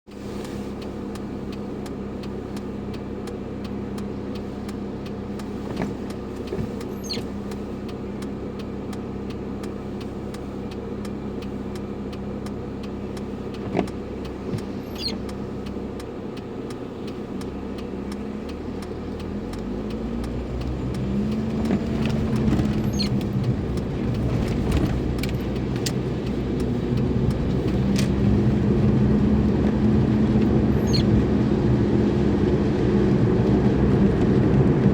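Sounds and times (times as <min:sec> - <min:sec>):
car engine hum: 0:00.1 - 0:34.9
road noise: 0:00.1 - 0:34.9
brief high squeaks: 0:06.9 - 0:07.3, 0:14.8 - 0:15.2, 0:22.9 - 0:23.2, 0:30.8 - 0:31.1.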